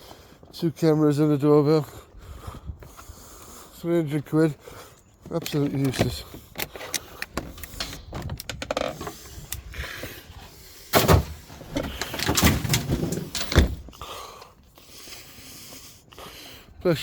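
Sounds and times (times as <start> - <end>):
rustling and scraping handling: 5.2 - 13.9.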